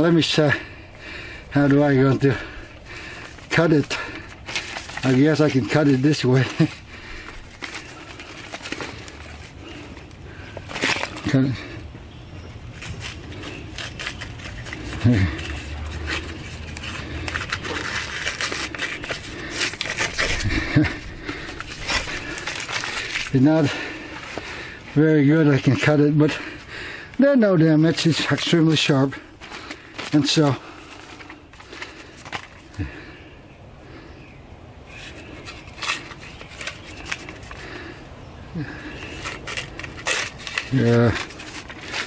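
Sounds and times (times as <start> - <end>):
axe crackling and scraping: 0.0 - 11.9, 12.6 - 33.2, 34.9 - 38.0, 38.6 - 42.0.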